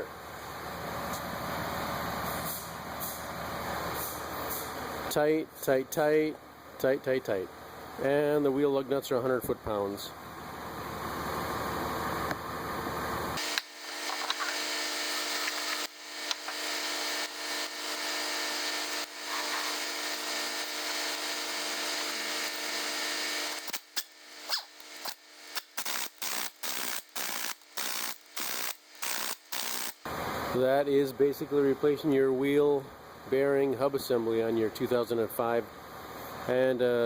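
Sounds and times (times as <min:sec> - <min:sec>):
power tool motor whine: 0:13.4 - 0:30.1.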